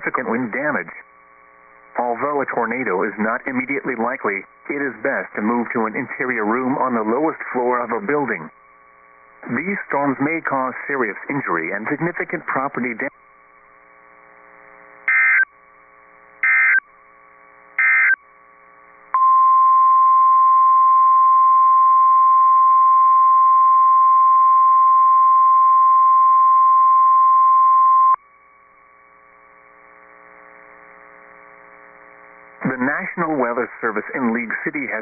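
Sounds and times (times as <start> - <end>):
steady warning alarm tone: 15.1 - 15.5, 16.4 - 16.8, 17.8 - 18.2.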